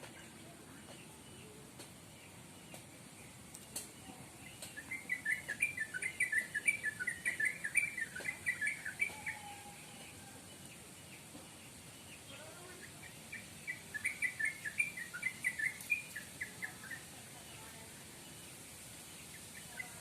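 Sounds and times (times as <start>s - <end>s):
bird chirping: 0.0s - 20.0s
faint clicks: 3.5s - 5.7s.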